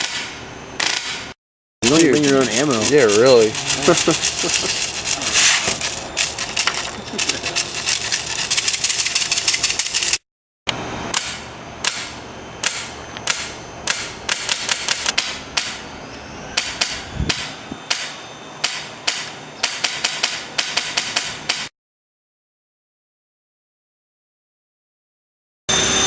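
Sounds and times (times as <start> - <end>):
airsoft rifle shots: 0.0 - 1.3, 16.6 - 21.7.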